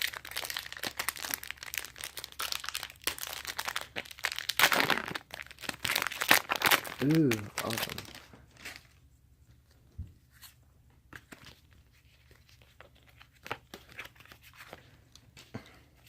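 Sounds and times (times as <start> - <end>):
foil wrapper crinkling: 0.0 - 9.0.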